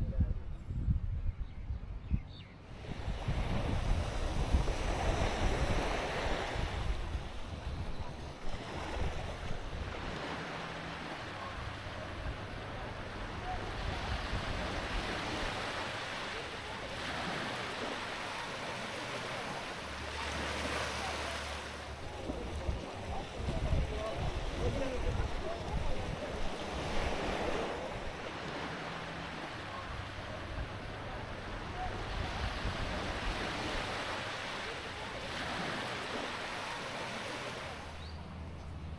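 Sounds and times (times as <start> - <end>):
wind buffeting microphone: 0.0 - 10.4, 11.3 - 16.1, 21.9 - 28.3, 29.6 - 34.3
sea waves washing onto beach: 2.7 - 38.0.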